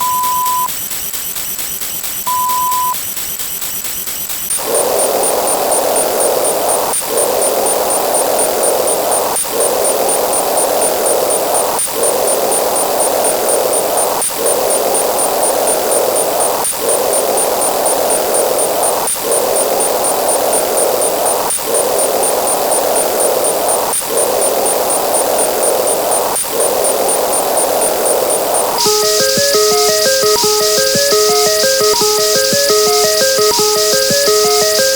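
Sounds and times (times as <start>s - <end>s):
faint steady high tone: 0.0s - 0.7s, 26.6s - 34.9s
loud dense static noise: 4.5s - 34.9s.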